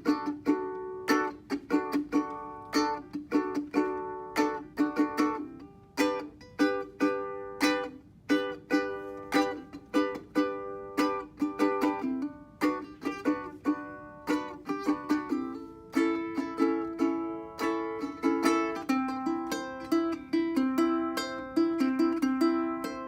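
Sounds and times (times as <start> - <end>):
ukulele strumming chords: 0.0 - 23.0.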